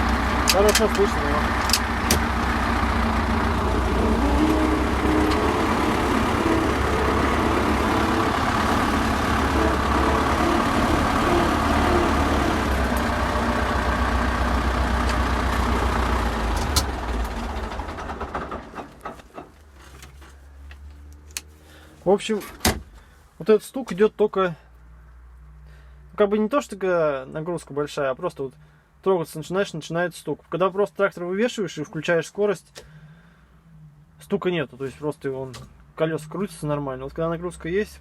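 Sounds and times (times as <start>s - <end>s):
tractor diesel engine under load: 0.0s - 23.1s.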